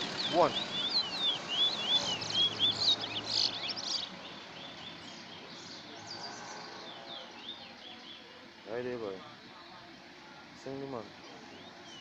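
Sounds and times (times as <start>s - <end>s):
bullfinch chirping song: 0.0s - 8.6s, 11.1s - 12.0s.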